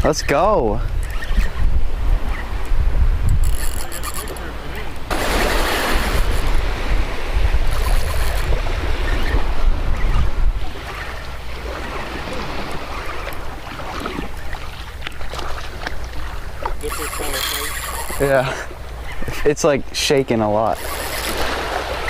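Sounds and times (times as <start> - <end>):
wind buffeting microphone: 0.0 - 20.0
ocean surf breaking: 3.9 - 19.7, 20.7 - 22.0.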